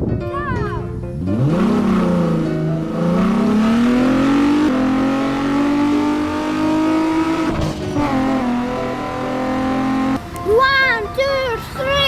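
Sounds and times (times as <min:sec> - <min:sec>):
vehicle engine revving: 0:01.1 - 0:10.2.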